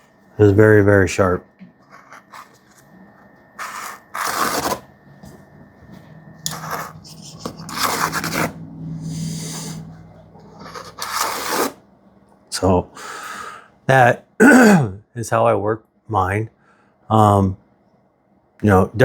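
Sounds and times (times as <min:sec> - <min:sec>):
knife edge rasping: 0:06.5 - 0:08.6.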